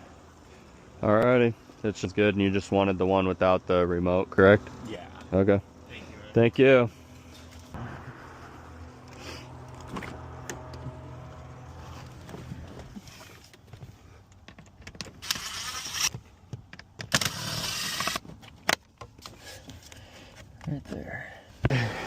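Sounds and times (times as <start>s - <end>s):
low hum: 0.0s - 13.3s
small electric motor whirring: 15.2s - 16.2s, 17.1s - 18.2s.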